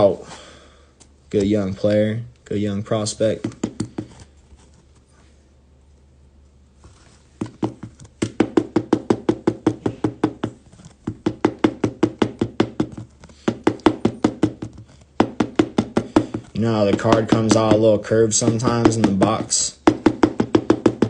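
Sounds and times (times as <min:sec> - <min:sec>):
rapid even knocking: 0:07.4 - 0:21.0.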